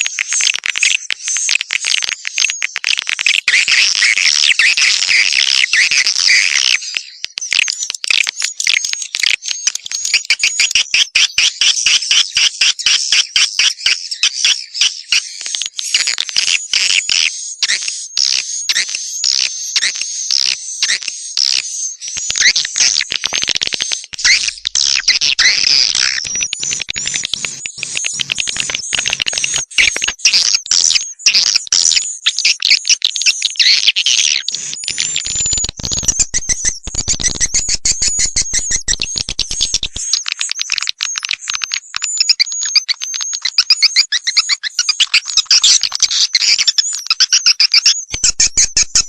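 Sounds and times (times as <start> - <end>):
swiftlet calls twittering: 18.4 - 49.0.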